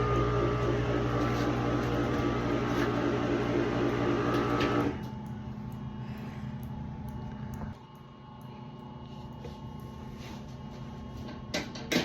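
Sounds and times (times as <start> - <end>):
low hum: 4.8 - 11.5.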